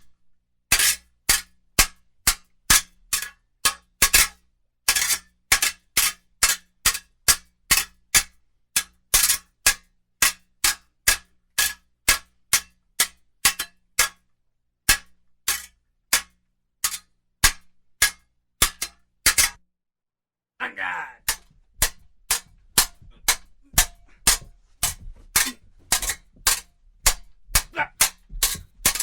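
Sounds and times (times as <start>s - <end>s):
swords clashing: 21.2s - 29.0s.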